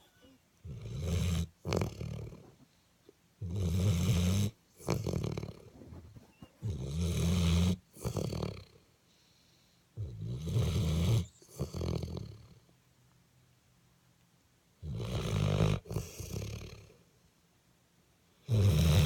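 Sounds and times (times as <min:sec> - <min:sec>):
dog snoring: 0:00.6 - 0:02.6, 0:03.4 - 0:08.8, 0:10.0 - 0:12.6, 0:14.8 - 0:17.0, 0:18.4 - 0:19.0.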